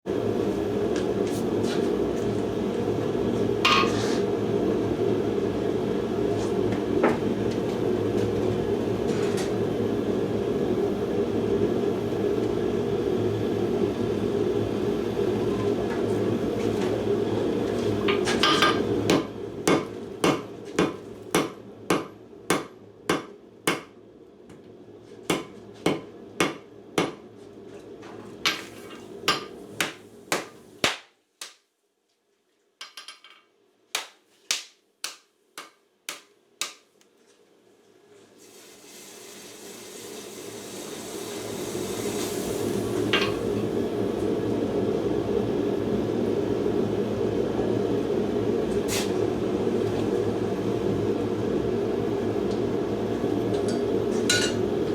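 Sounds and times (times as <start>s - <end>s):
hammer striking steel on anvil: 18.4s - 23.9s, 25.3s - 27.2s, 29.3s - 31.0s.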